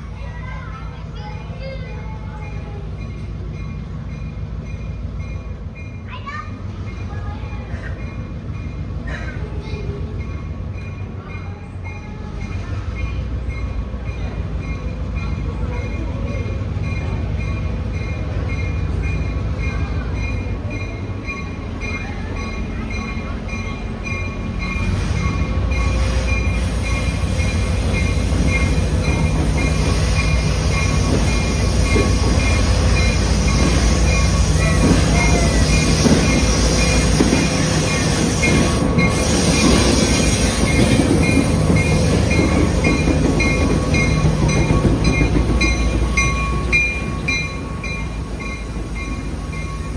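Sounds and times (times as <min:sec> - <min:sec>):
squealing train wheels: 0:00.0 - 0:49.9
train rumbling past: 0:00.0 - 0:49.9
pulsing high ringing tone: 0:23.0 - 0:49.9.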